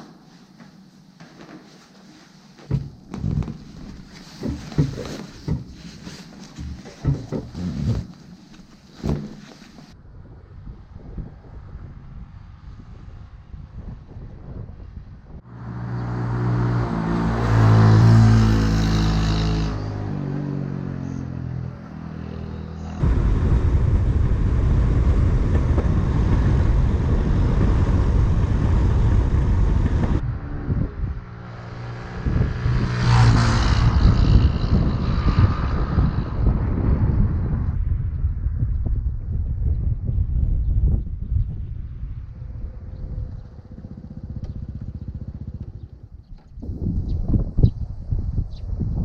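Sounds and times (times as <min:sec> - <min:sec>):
wind rumble on microphone: 0:02.6 - 0:20.4, 0:21.2 - 0:49.0
small motorcycle engine running: 0:32.1 - 0:36.2, 0:42.9 - 0:46.3.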